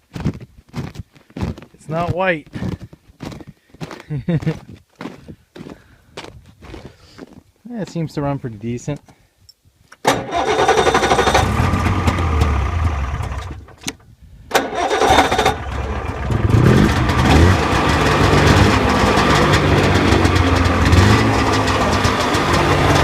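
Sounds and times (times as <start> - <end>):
snowmobile engine starting and running: 10.1 - 23.0.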